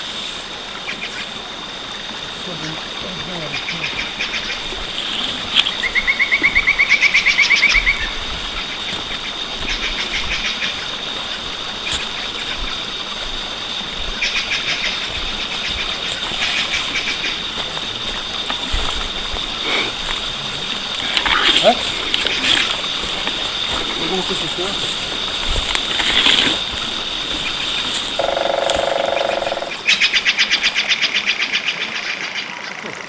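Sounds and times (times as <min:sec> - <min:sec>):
steady high whine: 0:28.1 - 0:29.9
bird trilling: 0:28.2 - 0:33.0.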